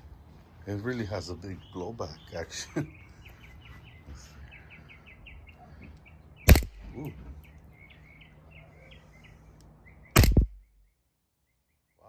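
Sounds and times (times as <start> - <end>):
airsoft pistol shot: 6.5 - 6.9, 10.2 - 10.8.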